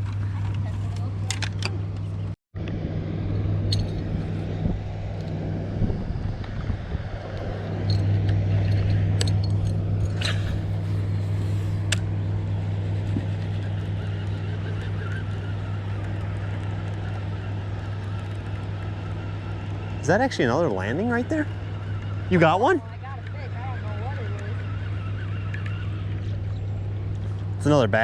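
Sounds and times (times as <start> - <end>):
boat motor humming: 0.0 - 28.0.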